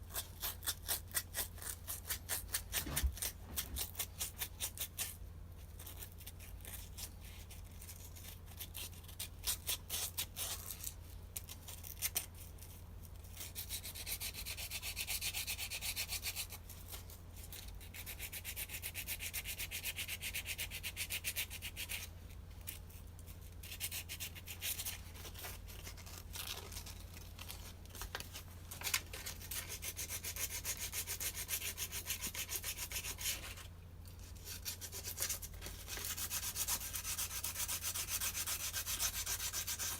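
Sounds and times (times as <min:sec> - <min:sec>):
sandpaper rubbing on metal: 0:34.4 - 0:39.9.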